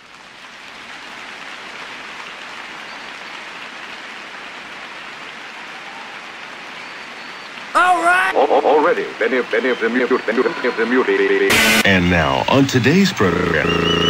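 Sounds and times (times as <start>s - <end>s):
rain-like hiss: 0.0s - 14.0s.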